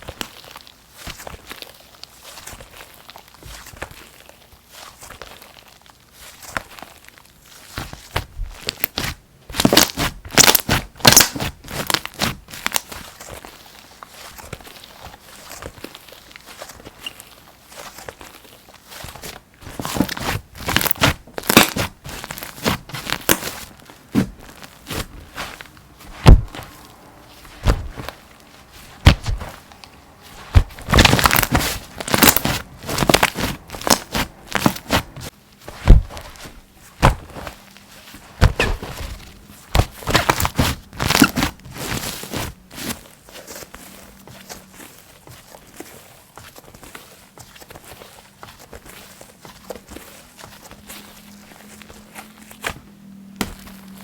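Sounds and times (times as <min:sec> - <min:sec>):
slime crackling: 0:00.0 - 0:54.0.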